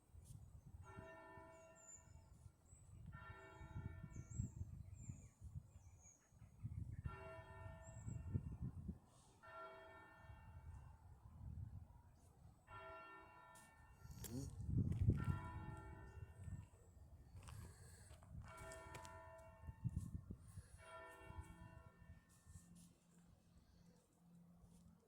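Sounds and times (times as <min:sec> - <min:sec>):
faint church bells ringing: 0:00.8 - 0:02.2, 0:03.0 - 0:04.4, 0:07.0 - 0:08.5, 0:09.3 - 0:11.2, 0:12.6 - 0:14.1, 0:15.1 - 0:16.8, 0:18.4 - 0:20.0, 0:20.7 - 0:22.8.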